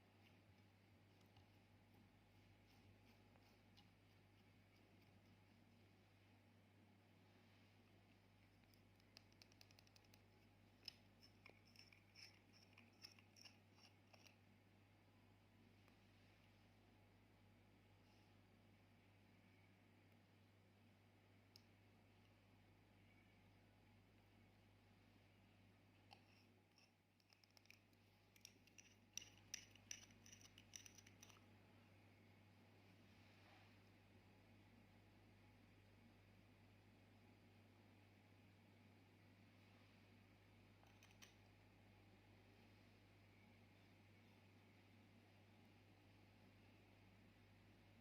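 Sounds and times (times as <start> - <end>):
low steady hum: 0.0 - 48.0
small clicks from handling objects: 8.4 - 14.4, 26.0 - 31.5, 40.8 - 41.5.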